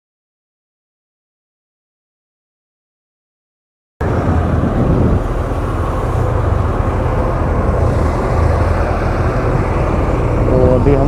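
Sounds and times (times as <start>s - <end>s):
motorcycle engine rumble: 4.0s - 11.0s
wind rushing over microphone: 4.0s - 11.0s.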